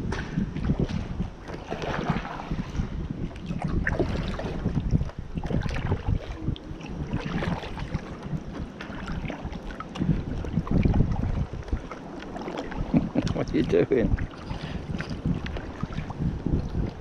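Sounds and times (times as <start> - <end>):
water splashing from paddling: 0.0 - 17.0
wind buffeting microphone: 0.0 - 17.0.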